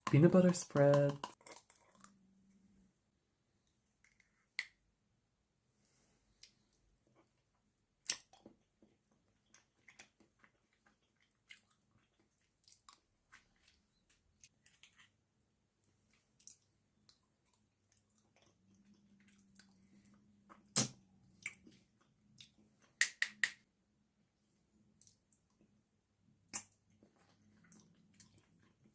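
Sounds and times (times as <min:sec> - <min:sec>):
wet mouth clicks and chewing: 0:00.8 - 0:02.2, 0:08.0 - 0:15.1, 0:16.1 - 0:23.6, 0:24.9 - 0:25.7, 0:26.4 - 0:28.9.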